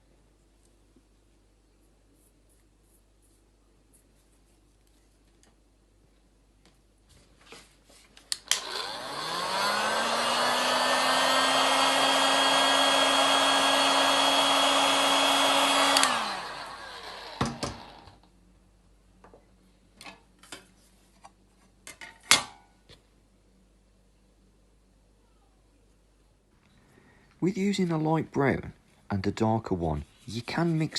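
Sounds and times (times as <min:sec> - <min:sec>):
heat gun motor and fan hiss: 0:08.4 - 0:18.2.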